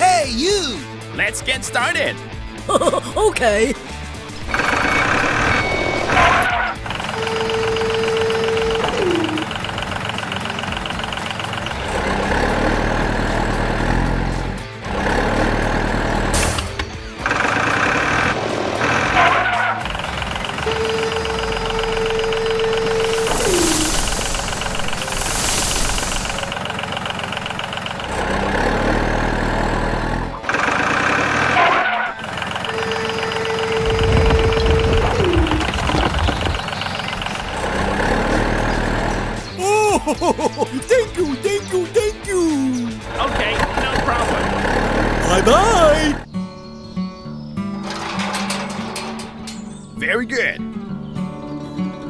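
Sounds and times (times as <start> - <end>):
vehicle engine running: 6.8 - 16.4, 26.5 - 31.5.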